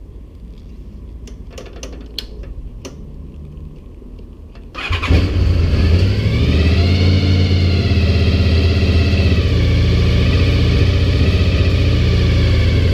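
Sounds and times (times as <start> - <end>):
motorcycle engine starting and idling: 4.6 - 12.9.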